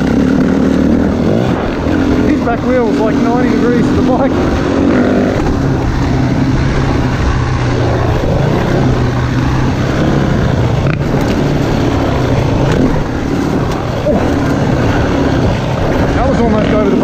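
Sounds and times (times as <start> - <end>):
dirt bike engine running: 0.0 - 17.0
wind noise on microphone: 4.0 - 17.0.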